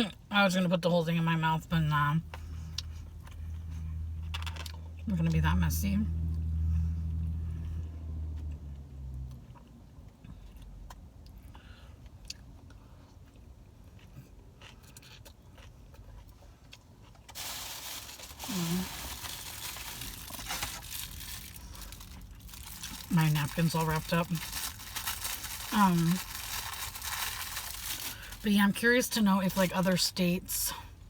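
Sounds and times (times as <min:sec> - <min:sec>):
low steady hum: 0:00.0 - 0:31.0
chewing and crunching fried chicken: 0:02.2 - 0:28.6
paper napkin rustling: 0:17.4 - 0:28.0.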